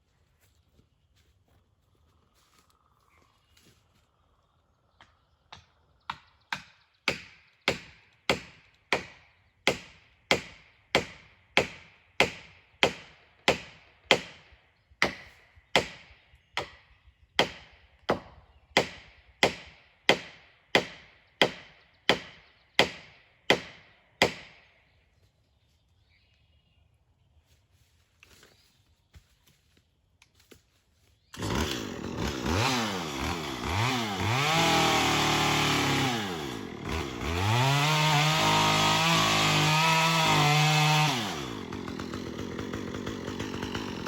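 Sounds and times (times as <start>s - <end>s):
wood being chopped: 5.0s - 14.4s, 15.0s - 16.8s, 17.4s - 24.6s.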